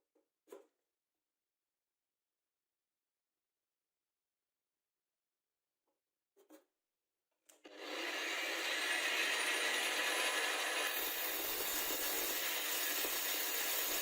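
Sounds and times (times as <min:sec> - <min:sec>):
power tool grinding: 0:07.7 - 0:14.0.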